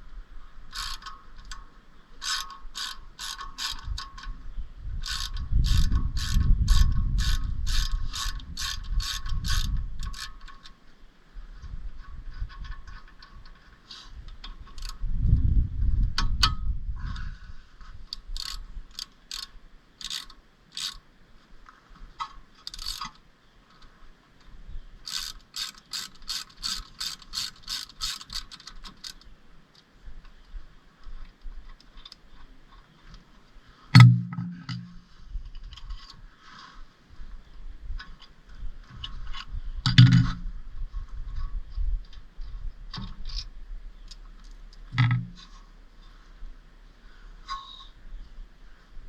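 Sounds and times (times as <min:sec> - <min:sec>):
ratchet wrench clicking: 0:00.7 - 0:01.6, 0:02.2 - 0:04.3, 0:05.0 - 0:10.7, 0:18.1 - 0:21.0, 0:22.6 - 0:23.2, 0:25.0 - 0:29.2.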